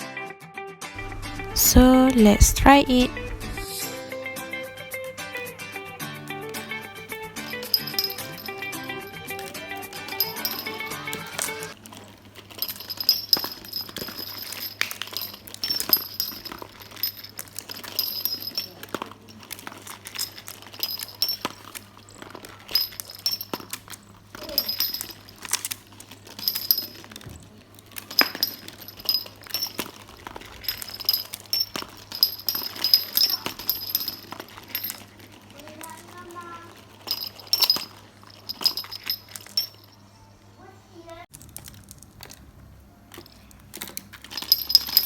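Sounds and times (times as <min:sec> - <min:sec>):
steady low hum: 0:01.0 - 0:03.8
marbles rolling and clattering: 0:07.4 - 0:40.0, 0:41.3 - 0:45.0.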